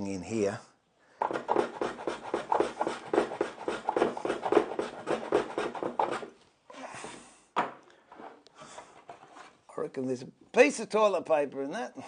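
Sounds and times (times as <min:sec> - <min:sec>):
wood scraping strokes: 0:01.2 - 0:06.4, 0:08.1 - 0:09.8
soft steady hiss: 0:06.3 - 0:12.0.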